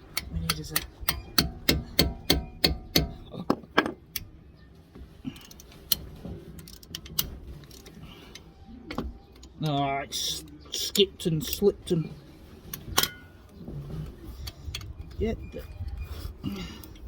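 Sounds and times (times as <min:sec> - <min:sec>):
hammer striking a spanner: 0:00.1 - 0:04.0
metal tools clicking and rattling: 0:10.2 - 0:11.7.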